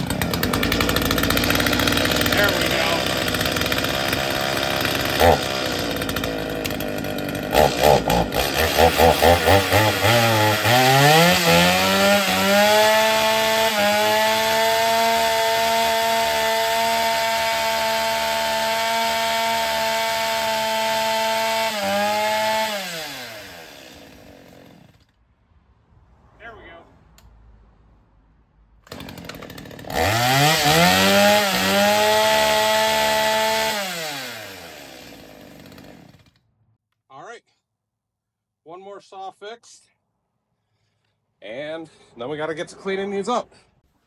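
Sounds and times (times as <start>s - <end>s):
chainsaw engine revving: 0.0s - 25.0s, 28.8s - 36.4s.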